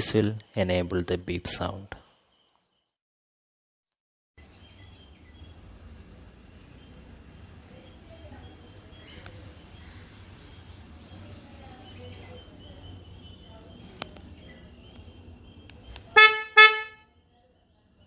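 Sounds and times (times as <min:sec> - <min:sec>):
car horn chirps: 0:16.1 - 0:17.1.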